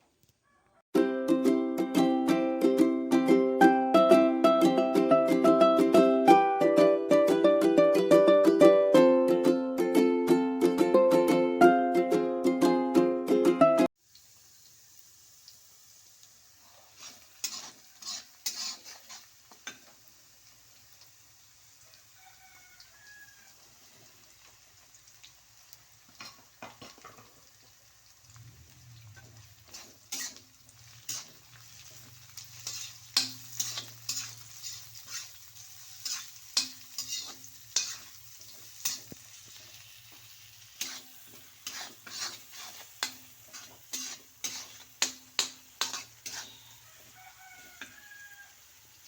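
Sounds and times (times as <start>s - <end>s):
food sizzling: 13.8s - 49.0s
metal spatula scraping a pan: 16.7s - 20.0s, 26.1s - 27.3s, 28.7s - 48.1s.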